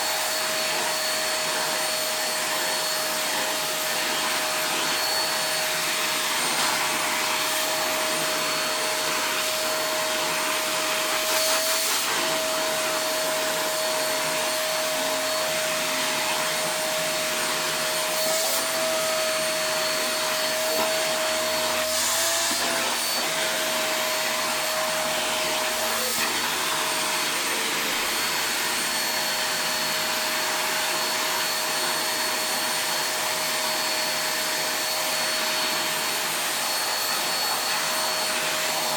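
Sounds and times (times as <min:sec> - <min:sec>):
vacuum cleaner running: 0:00.0 - 0:38.9.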